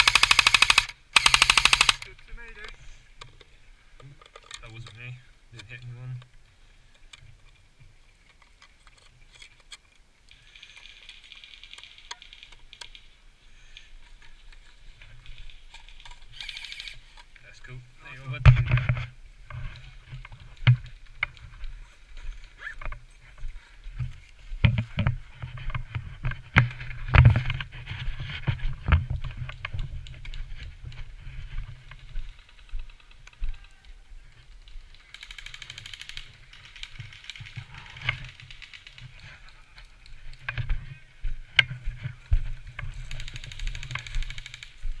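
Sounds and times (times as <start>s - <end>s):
sharp clicks and thumps: 18.3s - 21.5s, 24.0s - 31.0s
camera rustling and knocking: 18.4s - 21.7s, 24.0s - 33.5s.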